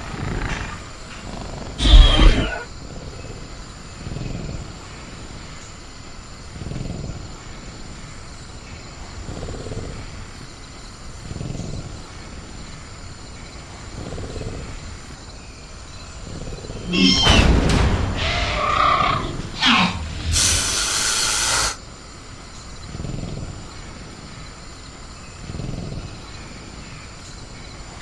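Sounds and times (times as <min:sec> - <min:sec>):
creature rumbling vocalisations: 0:00.0 - 0:03.0, 0:16.2 - 0:21.8
high insect tone: 0:00.0 - 0:28.0.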